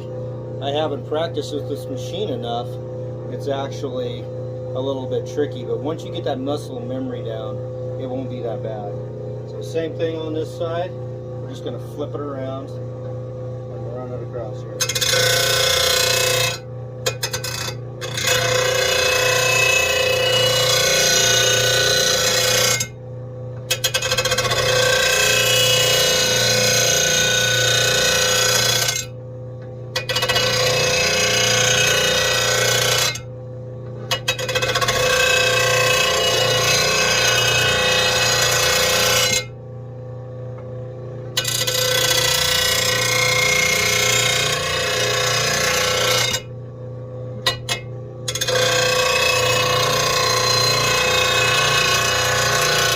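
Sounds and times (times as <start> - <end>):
motor hum: 0.0 - 52.9
grinder grinding steel blade: 14.4 - 23.0, 23.7 - 29.2, 30.0 - 33.3, 34.1 - 39.5, 41.4 - 46.5, 47.4 - 52.9.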